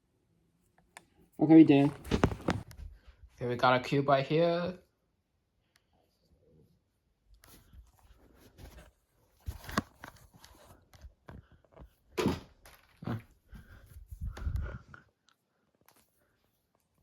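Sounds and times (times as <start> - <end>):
plastic cube rustling and knocking: 1.8 - 2.7.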